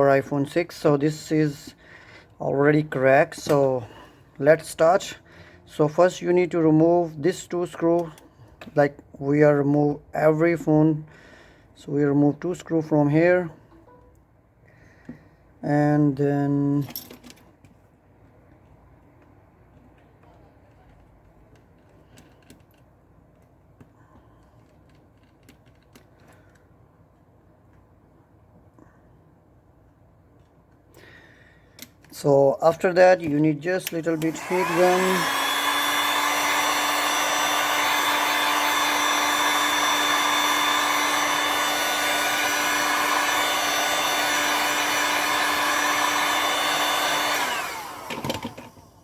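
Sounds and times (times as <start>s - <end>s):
heat gun fan whining: 0.2s - 13.9s, 30.4s - 49.0s.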